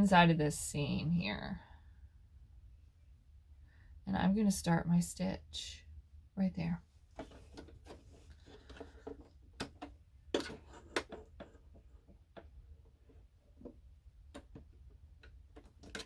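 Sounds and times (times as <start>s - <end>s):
low steady hum: 0.0s - 16.0s
light clicks and knocks of handling: 7.1s - 16.0s.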